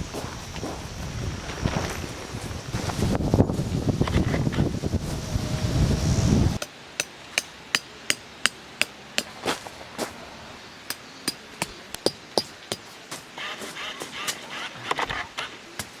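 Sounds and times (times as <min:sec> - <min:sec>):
wind buffeting microphone: 0:00.0 - 0:06.6.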